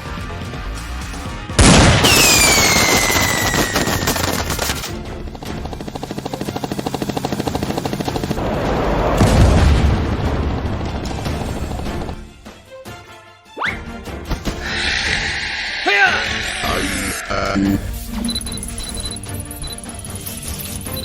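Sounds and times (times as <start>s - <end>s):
background music: 0.0s - 21.0s
automatic gunfire: 1.6s - 5.1s
blast with falling whistle: 2.0s - 4.3s.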